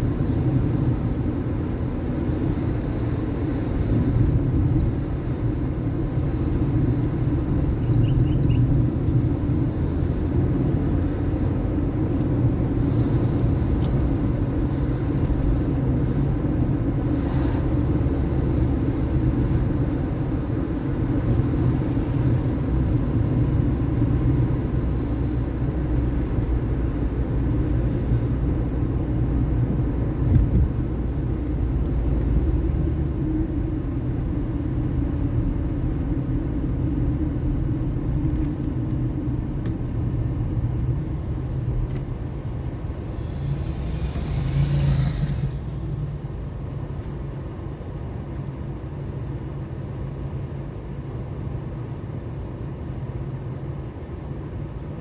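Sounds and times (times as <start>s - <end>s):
car engine and tyres rumbling: 0.0s - 55.0s.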